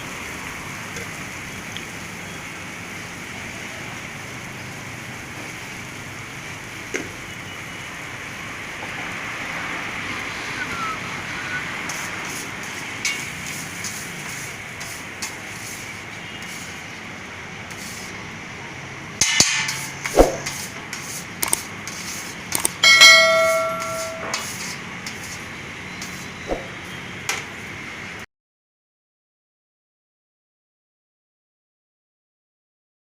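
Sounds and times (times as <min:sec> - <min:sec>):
steady hiss: 0:10.1 - 0:18.3
metal utensils clanking on griddle: 0:11.9 - 0:15.8, 0:19.2 - 0:25.4
ringing metal clang: 0:19.2 - 0:20.1, 0:22.8 - 0:24.5.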